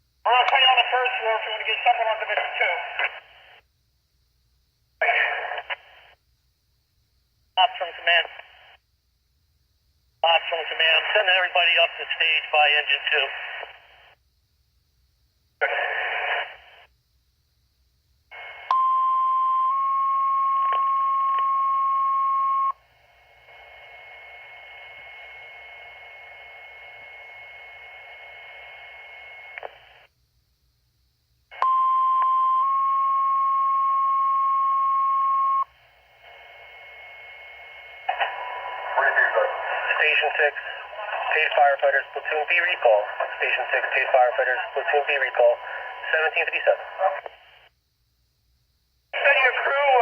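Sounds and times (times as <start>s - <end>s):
radio hiss: 0.3s - 3.6s, 5.0s - 6.2s, 7.6s - 8.8s, 10.2s - 14.2s, 15.6s - 16.9s, 18.3s - 18.7s, 23.1s - 30.1s, 36.2s - 47.7s, 49.1s - 50.0s
burst of radio noise: 5.0s - 5.9s, 15.6s - 16.7s, 38.0s - 47.5s, 49.2s - 50.0s
two-tone paging tones: 18.7s - 22.7s, 31.6s - 35.6s.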